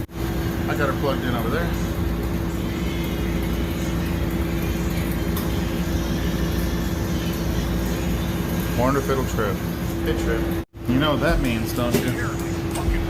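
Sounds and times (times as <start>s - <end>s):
machinery droning: 0.0s - 13.0s.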